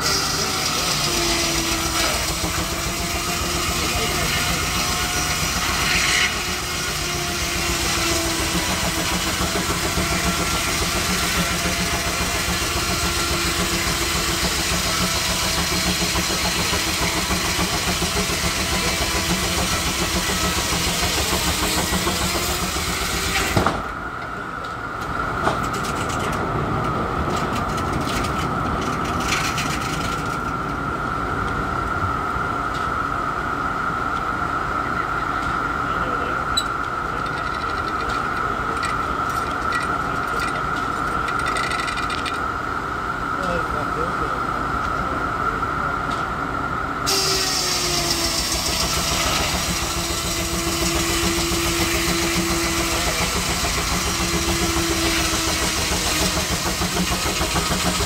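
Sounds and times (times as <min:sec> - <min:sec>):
steam engine hissing and clattering: 0:00.0 - 0:30.9, 0:34.2 - 0:45.0, 0:47.1 - 0:58.0
steady high hum: 0:22.0 - 0:55.5.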